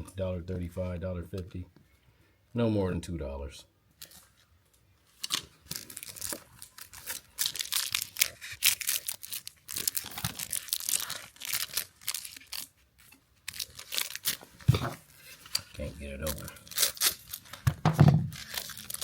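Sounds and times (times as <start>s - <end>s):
plastic packaging crinkling and tearing: 5.1s - 19.0s.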